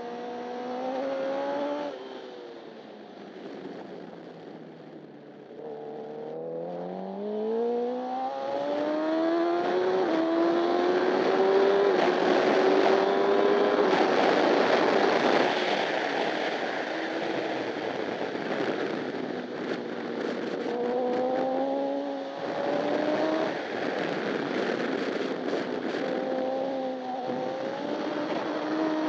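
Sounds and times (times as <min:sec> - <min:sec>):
motorcycle engine accelerating: 0:00.0 - 0:29.0
wind noise: 0:03.3 - 0:29.0.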